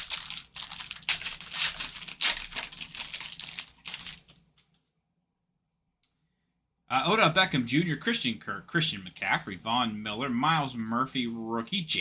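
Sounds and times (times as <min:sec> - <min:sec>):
wrapper tearing and crinkling: 0:00.0 - 0:04.7.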